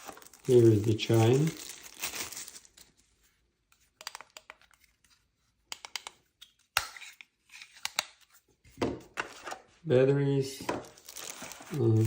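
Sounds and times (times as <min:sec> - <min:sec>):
packaging crinkle: 0:00.0 - 0:03.0, 0:10.8 - 0:12.0.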